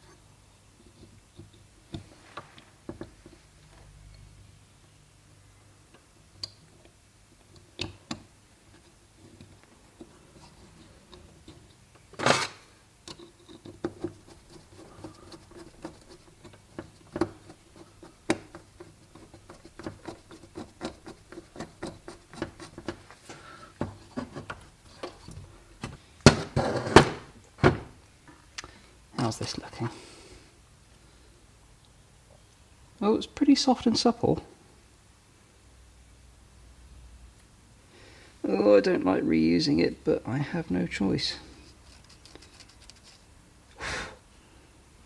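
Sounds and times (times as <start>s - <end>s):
small parts and tools handled: 8.7s - 23.1s, 41.6s - 43.4s.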